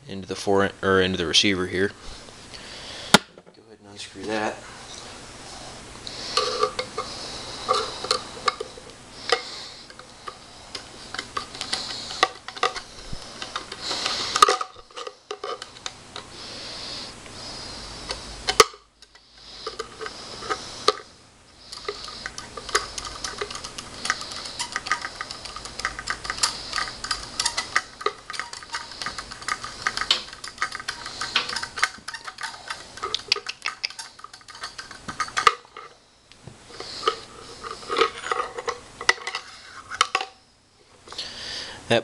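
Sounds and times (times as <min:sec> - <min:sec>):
screwdriver metallic clicks and scrapes: 0:21.7 - 0:35.9.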